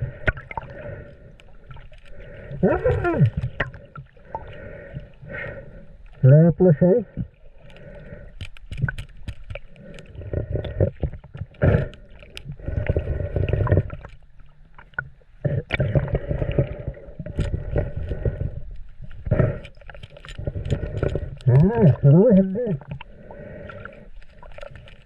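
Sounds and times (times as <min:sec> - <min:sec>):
water sloshing and splashing: 0:00.0 - 0:06.3, 0:07.0 - 0:25.0
small clicks and knocks: 0:08.4 - 0:10.1.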